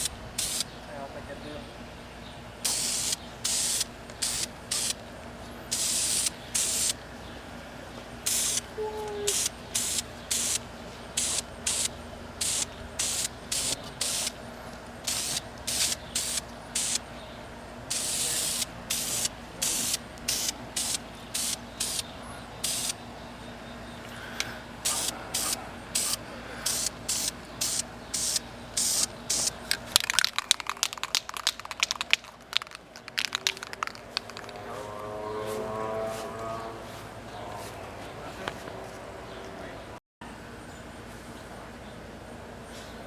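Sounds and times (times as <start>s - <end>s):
pressurised spray hissing: 0.0s - 0.7s, 2.6s - 5.0s, 5.7s - 7.0s, 8.2s - 14.4s, 15.0s - 17.0s, 17.9s - 23.0s, 24.8s - 29.6s.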